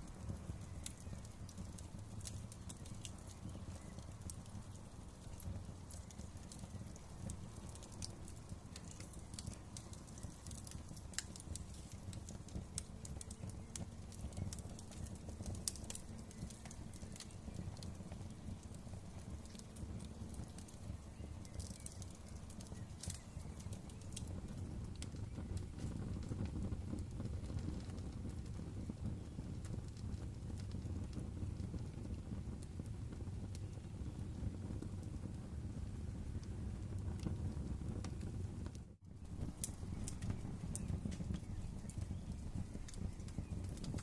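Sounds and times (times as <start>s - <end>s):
wood fire crackling: 0.0s - 44.0s.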